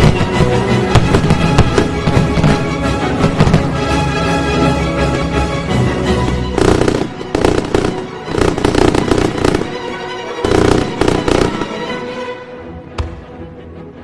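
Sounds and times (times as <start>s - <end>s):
fireworks bangs: 0.0s - 4.0s, 6.2s - 12.0s
music: 0.0s - 14.0s.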